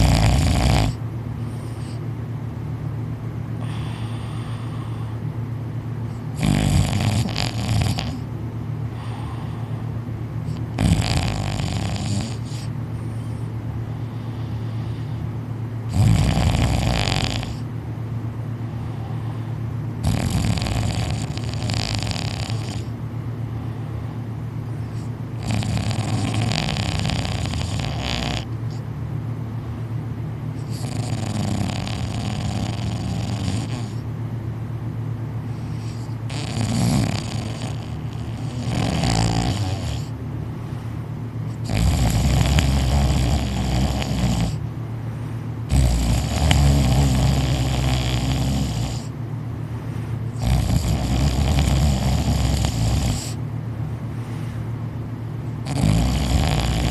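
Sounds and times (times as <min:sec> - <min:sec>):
person snoring: 0:00.0 - 0:02.0, 0:03.6 - 0:05.2, 0:06.2 - 0:08.3, 0:10.5 - 0:13.4, 0:15.9 - 0:17.7, 0:18.8 - 0:22.9, 0:24.9 - 0:28.5, 0:30.6 - 0:34.0, 0:35.6 - 0:40.2, 0:41.5 - 0:44.6, 0:45.7 - 0:49.1, 0:50.3 - 0:53.4, 0:55.6 - 0:56.9.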